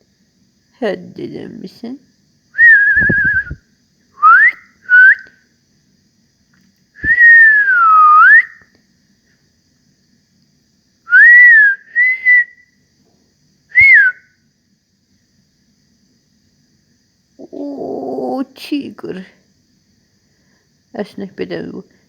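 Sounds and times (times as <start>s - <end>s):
person whistling: 2.6s - 3.6s, 4.2s - 5.3s, 7.0s - 8.6s, 11.1s - 12.6s, 13.8s - 14.2s.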